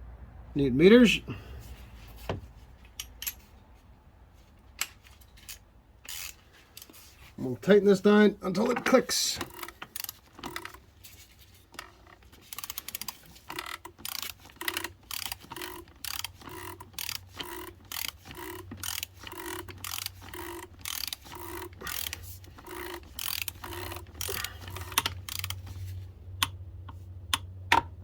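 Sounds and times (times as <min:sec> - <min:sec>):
torque wrench ratchet clicking: 0:06.0 - 0:06.9, 0:09.4 - 0:10.8, 0:12.5 - 0:25.7.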